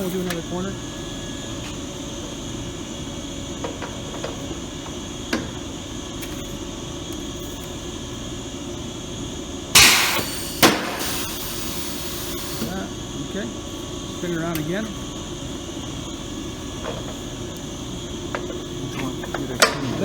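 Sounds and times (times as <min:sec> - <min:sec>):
steady background hum: 0:00.0 - 0:20.0
punch press crunching hit: 0:09.8 - 0:11.5.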